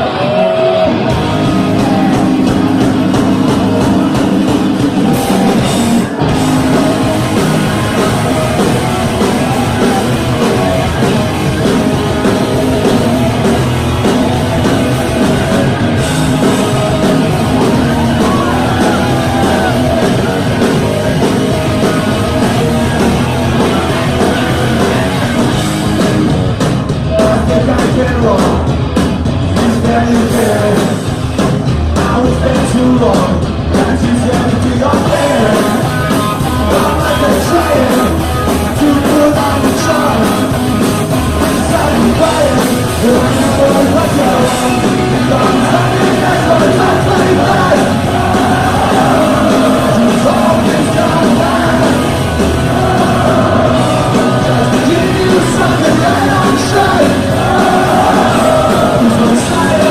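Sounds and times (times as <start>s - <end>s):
punk rock band playing live: 0.0s - 59.9s
person singing: 32.0s - 59.9s.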